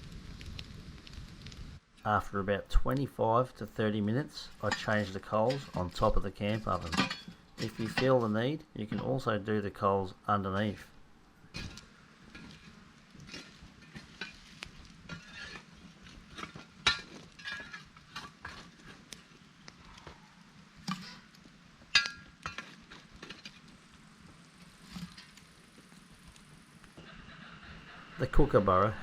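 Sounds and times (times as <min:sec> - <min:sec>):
metal tools scraping on a lid: 0:04.6 - 0:08.2.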